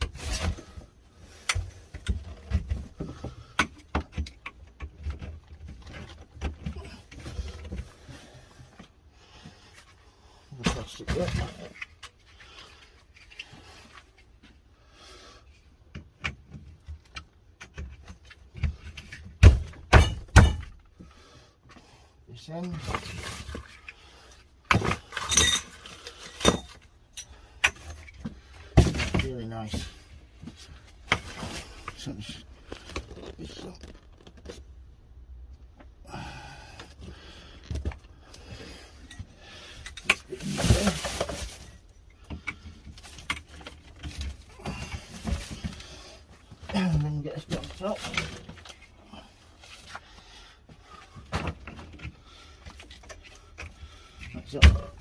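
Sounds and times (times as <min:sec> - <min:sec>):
shelving parts clicking and knocking: 0:00.0 - 0:09.0, 0:15.8 - 0:21.0
scrape and rustle: 0:40.2 - 0:41.9.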